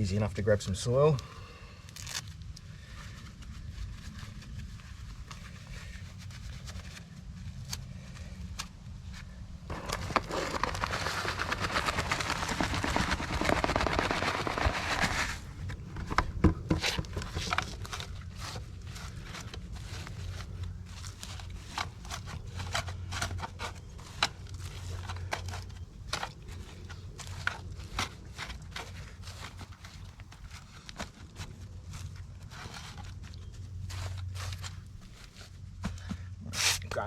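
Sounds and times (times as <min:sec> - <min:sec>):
crunches and clicks: 0:09.7 - 0:17.7
soil scooped into plastic bucket: 0:09.7 - 0:23.8.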